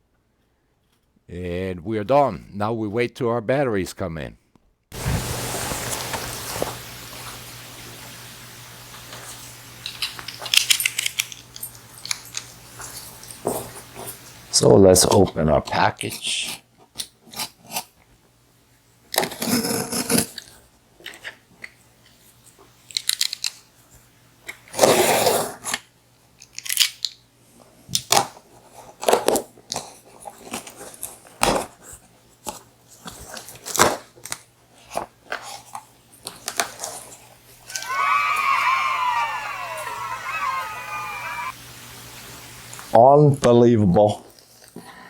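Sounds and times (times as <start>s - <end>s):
packaging rustling and tearing: 5.0s - 7.4s.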